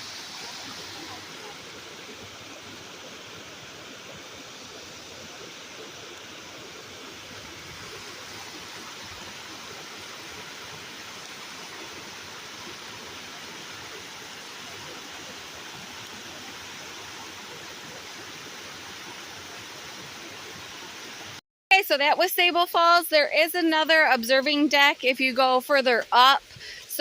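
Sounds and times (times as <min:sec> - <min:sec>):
waterfall rushing: 0:00.0 - 0:21.4.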